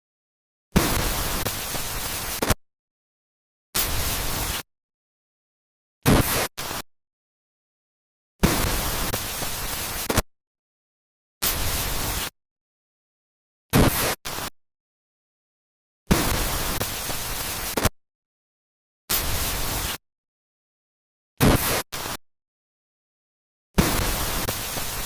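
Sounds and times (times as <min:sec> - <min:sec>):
bursts of static hiss: 0:00.8 - 0:02.6, 0:03.8 - 0:04.7, 0:06.0 - 0:06.8, 0:08.4 - 0:10.2, 0:11.4 - 0:12.4, 0:13.7 - 0:14.5, 0:16.1 - 0:17.9, 0:19.1 - 0:20.0, 0:21.4 - 0:22.2, 0:23.8 - 0:25.0.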